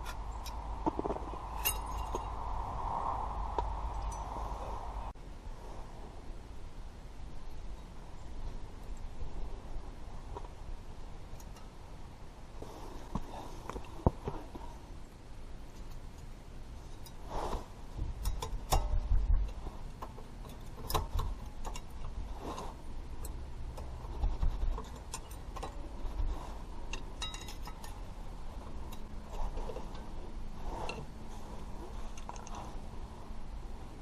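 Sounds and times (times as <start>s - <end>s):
metallic clicks of tools: 18.2s - 24.1s, 26.9s - 29.1s.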